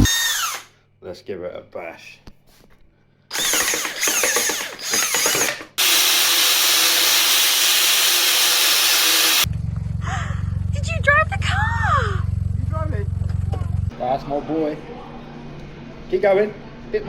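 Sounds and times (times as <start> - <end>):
electric starter cranking: 3.3 - 9.5.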